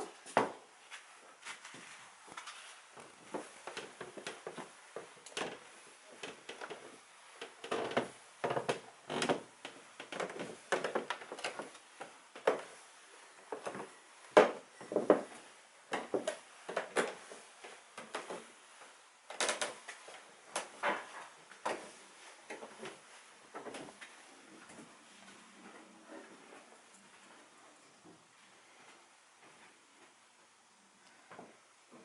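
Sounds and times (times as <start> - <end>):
staircase creaking and knocking: 3.3 - 12.7, 13.5 - 17.2.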